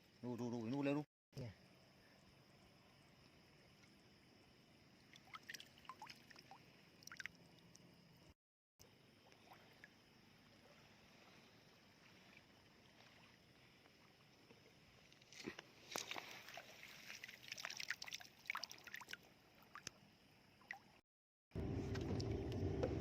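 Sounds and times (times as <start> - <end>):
small water splashes and clicks: 3.6 - 4.0, 5.0 - 7.9, 8.8 - 10.0, 12.0 - 21.0, 21.8 - 23.0.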